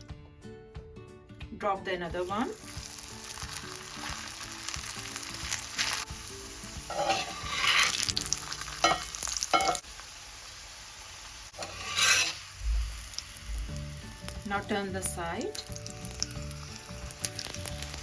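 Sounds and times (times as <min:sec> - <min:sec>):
flatbread sizzling in oil: 0:02.3 - 0:18.0.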